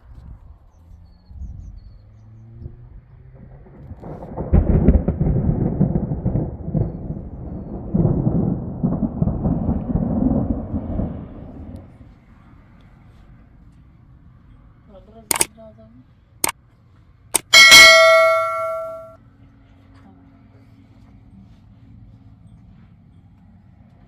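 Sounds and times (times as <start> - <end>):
low rumbling: 2.7 - 12.0.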